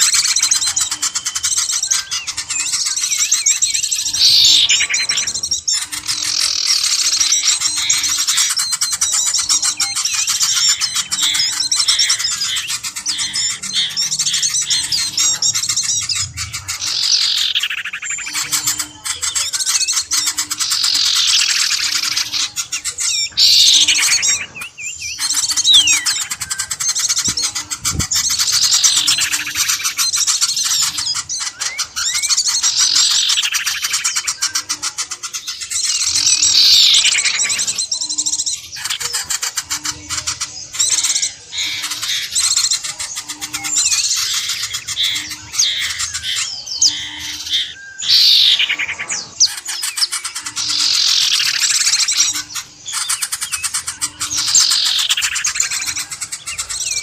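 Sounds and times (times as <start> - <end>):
small birds chirping: 0.0 - 57.0.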